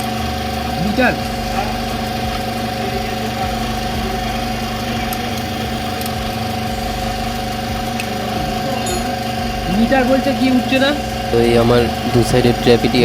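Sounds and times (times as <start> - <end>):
engine hum: 0.0 - 13.0.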